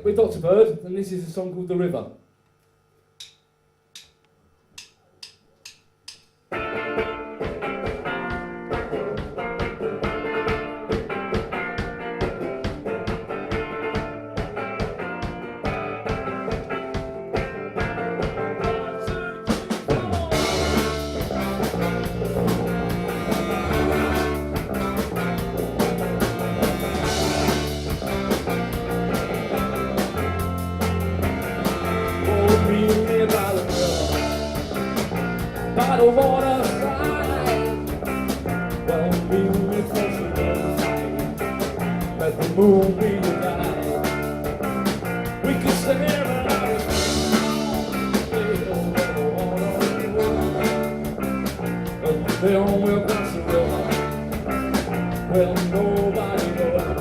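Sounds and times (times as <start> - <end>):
drumstick clicks counting in: 4.0 - 4.2, 4.8 - 6.4
live rock band playing: 6.5 - 57.0.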